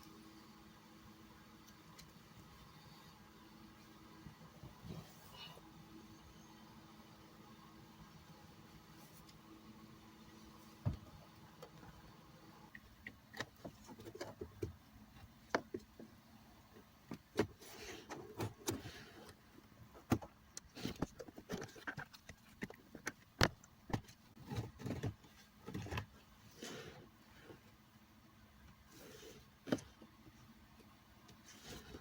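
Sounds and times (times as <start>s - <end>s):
plastic parts clicking and knocking: 12.7s - 16.1s, 16.8s - 26.2s.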